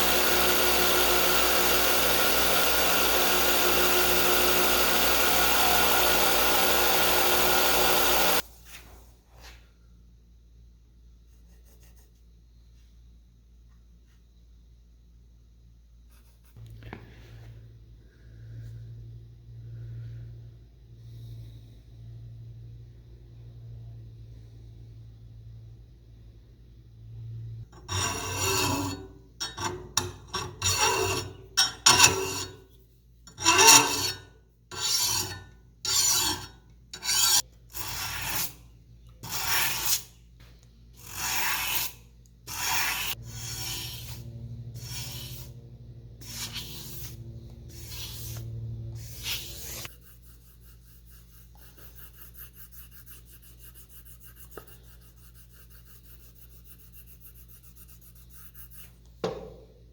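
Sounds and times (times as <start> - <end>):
file scraping steel: 0.0 - 8.4, 27.8 - 38.6, 39.2 - 40.1, 41.0 - 45.6, 46.2 - 58.9.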